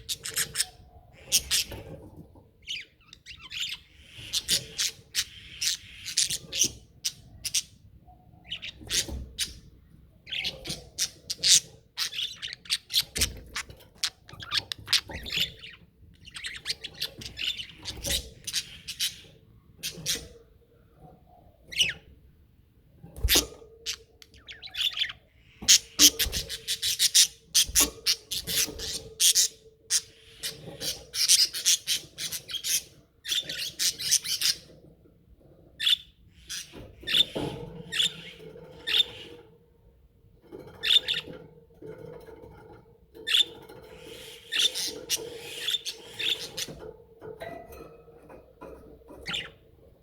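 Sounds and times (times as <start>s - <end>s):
budgerigars chattering: 0.0s - 1.8s, 2.7s - 7.8s, 10.3s - 20.4s, 43.3s - 46.8s.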